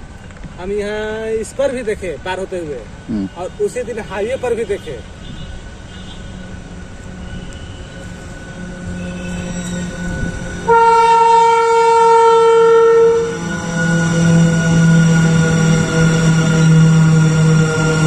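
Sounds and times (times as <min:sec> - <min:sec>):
train rumble: 0:05.0 - 0:18.0
train horn blast: 0:07.2 - 0:18.0.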